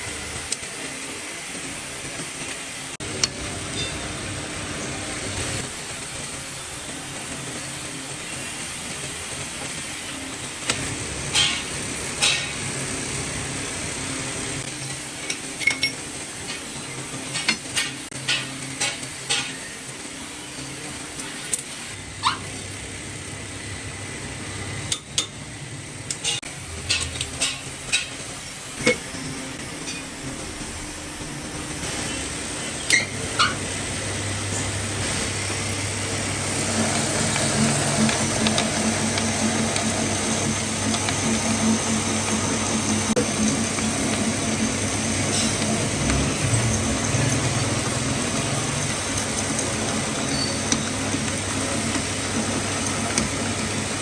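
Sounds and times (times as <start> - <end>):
metal lathe humming: 26.5 - 54.0.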